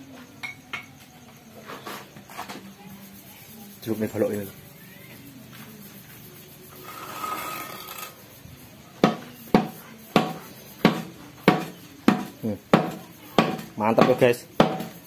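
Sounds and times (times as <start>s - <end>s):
scraping rattle: 6.7s - 8.2s
hammer knocking on wooden block: 9.0s - 15.0s.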